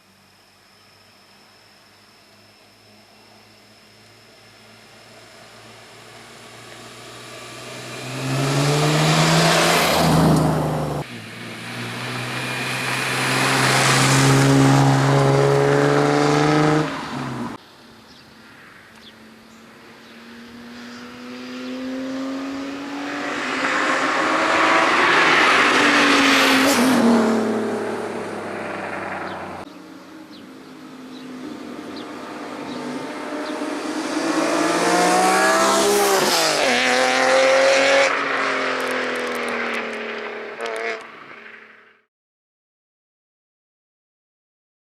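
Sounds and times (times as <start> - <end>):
car engine revving at full throttle: 4.2 - 17.6, 19.8 - 29.7, 30.8 - 41.1.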